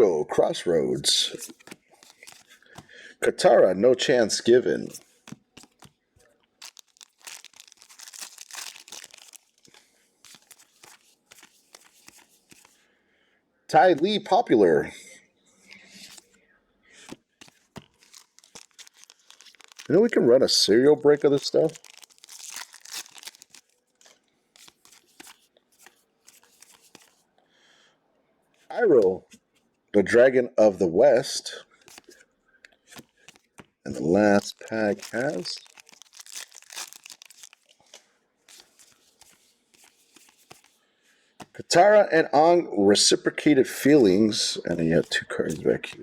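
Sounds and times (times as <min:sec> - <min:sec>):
cards sliding and rustling: 0:01.3 - 0:02.9, 0:04.8 - 0:06.0, 0:06.6 - 0:12.8, 0:15.9 - 0:16.3, 0:17.0 - 0:20.2, 0:20.8 - 0:27.2, 0:31.8 - 0:32.2, 0:32.8 - 0:40.8
foil wrapper crinkling: 0:01.6 - 0:02.8, 0:05.0 - 0:05.9, 0:06.6 - 0:12.7, 0:17.1 - 0:27.2, 0:33.2 - 0:37.8, 0:38.5 - 0:40.8.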